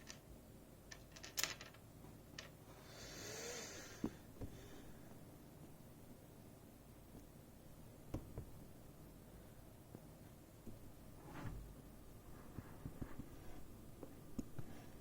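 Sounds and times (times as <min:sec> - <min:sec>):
rubbing or sliding sound: 0:11.2 - 0:13.7.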